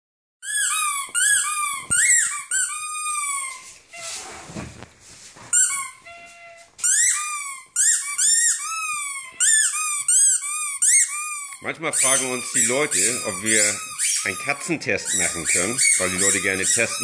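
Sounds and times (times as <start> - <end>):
dog chewing squeaky toy: 0.4 - 4.2, 5.5 - 17.0
rustling: 1.0 - 7.8.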